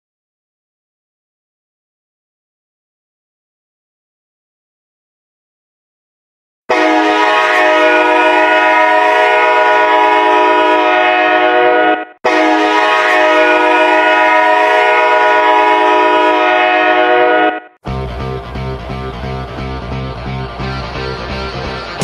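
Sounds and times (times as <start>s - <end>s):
hockey goal horn blasts: 6.7s - 17.8s.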